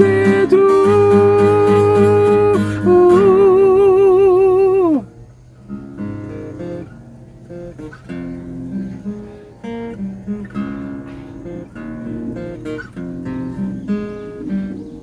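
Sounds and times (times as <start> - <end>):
person singing with vibrato: 0.0 - 5.1
acoustic guitar playing: 0.0 - 15.0.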